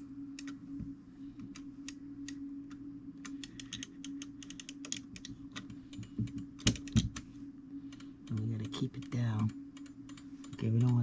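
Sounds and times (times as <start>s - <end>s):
steady low hum: 0.0s - 11.0s
small metallic clicks of clock winding: 3.2s - 5.3s, 8.3s - 11.0s.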